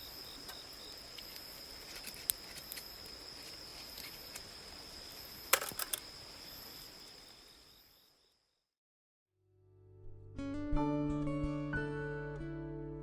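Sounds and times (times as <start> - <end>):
night insects trilling: 0.0 - 8.6.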